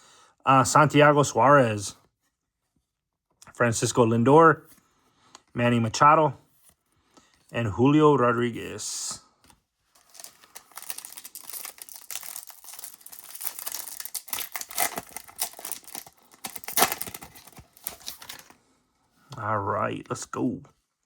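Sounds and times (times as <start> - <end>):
plastic wrapper crinkling and tearing: 9.9 - 18.6.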